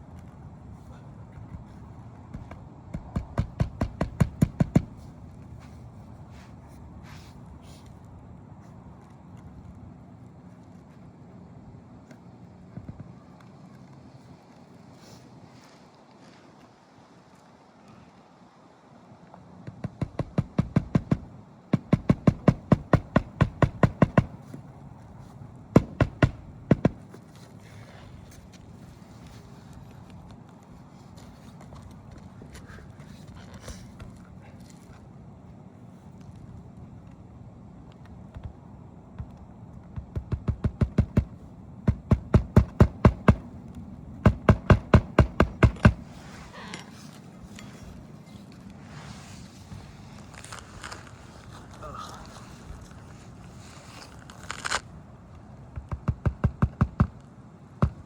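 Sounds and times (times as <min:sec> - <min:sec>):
hammer driving nails: 0:02.3 - 0:05.0, 0:19.7 - 0:24.6, 0:25.7 - 0:27.2, 0:40.0 - 0:43.5, 0:44.2 - 0:46.1.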